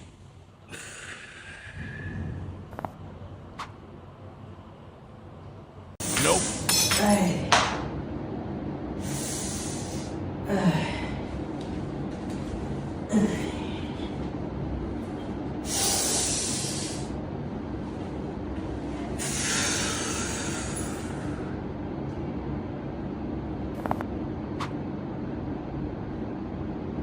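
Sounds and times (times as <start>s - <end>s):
low background hum: 0.0s - 27.0s
hissing exhales: 9.0s - 10.1s, 15.6s - 17.1s, 19.2s - 21.4s
low grunts: 13.1s - 14.0s.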